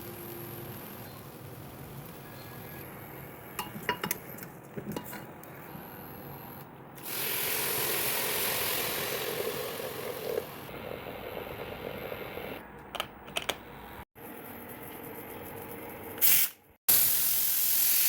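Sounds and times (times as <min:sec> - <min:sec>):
utensils clinking against pot: 0:03.6 - 0:04.2, 0:04.8 - 0:05.3.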